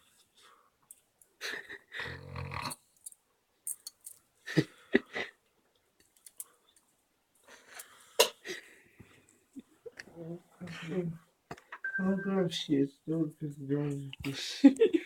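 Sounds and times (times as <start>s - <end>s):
person snoring: 2.0s - 2.8s.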